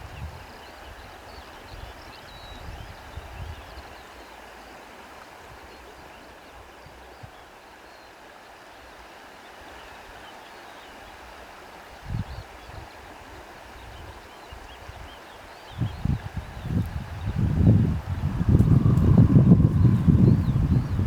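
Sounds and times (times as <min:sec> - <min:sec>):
stream flowing: 0:03.8 - 0:21.0
low rumble: 0:17.9 - 0:21.0.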